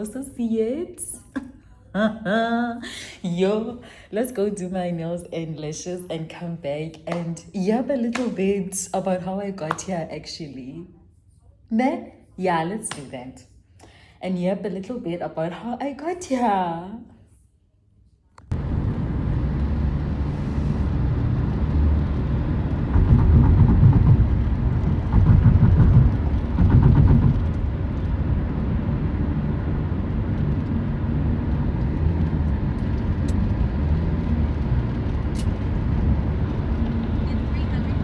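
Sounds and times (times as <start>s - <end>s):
vehicle rumble: 18.5s - 38.0s.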